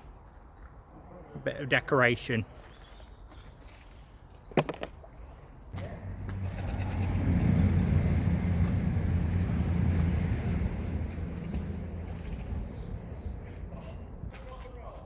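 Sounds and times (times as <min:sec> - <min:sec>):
low engine drone: 0:05.8 - 0:14.3.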